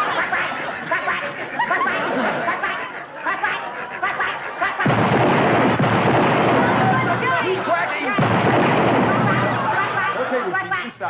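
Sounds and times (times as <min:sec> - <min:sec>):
woman imitating duck quacks: 0:00.0 - 0:04.9
audience laughter: 0:00.0 - 0:11.0.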